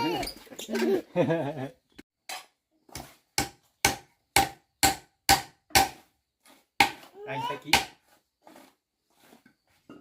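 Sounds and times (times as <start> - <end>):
child's voice: 0.0 - 1.0, 7.1 - 7.7
tool strikes on wood: 2.3 - 6.1, 6.8 - 8.1.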